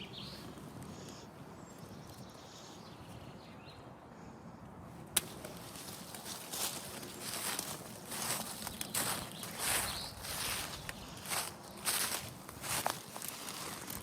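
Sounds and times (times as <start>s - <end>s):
handling and rustling noise: 5.2s - 14.0s.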